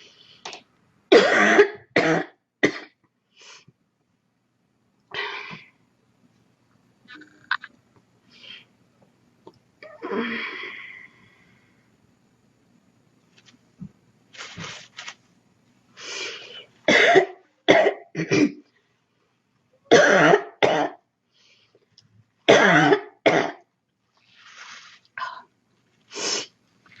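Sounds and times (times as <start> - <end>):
girl coughing: 1.1 - 2.9, 16.9 - 18.6, 19.9 - 21.0, 22.5 - 23.6.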